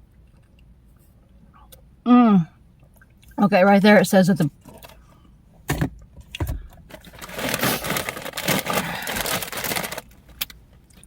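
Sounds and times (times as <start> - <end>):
chip bag crackling rustle: 7.0 - 10.2.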